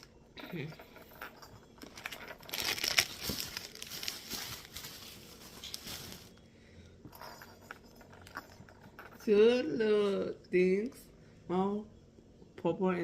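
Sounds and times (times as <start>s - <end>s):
packaging crinkling: 1.8s - 6.4s.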